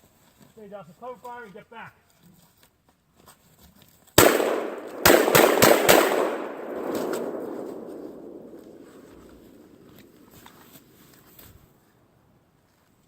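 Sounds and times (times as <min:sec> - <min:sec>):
shotgun shots with echo: 0:04.2 - 0:10.9.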